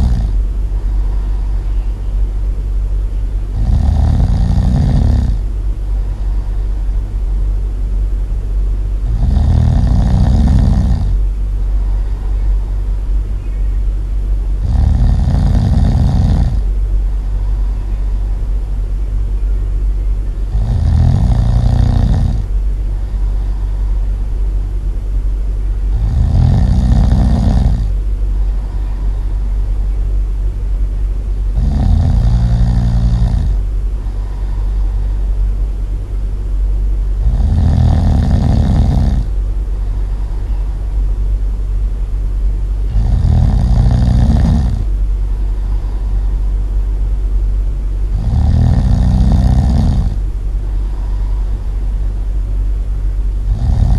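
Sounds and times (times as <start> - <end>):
loud snoring: 0.0 - 1.6, 3.5 - 6.8, 9.0 - 12.8, 14.6 - 18.3, 20.4 - 24.0, 25.9 - 29.6, 31.5 - 35.2, 37.2 - 40.3, 42.8 - 46.3, 48.1 - 50.2, 53.4 - 53.9
constant low rumble: 0.0 - 53.9.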